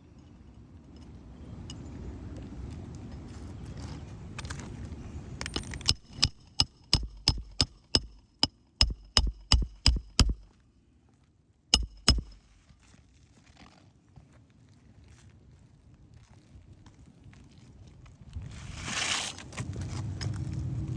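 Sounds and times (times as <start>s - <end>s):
hammer striking nails: 5.5s - 10.5s, 11.8s - 12.6s.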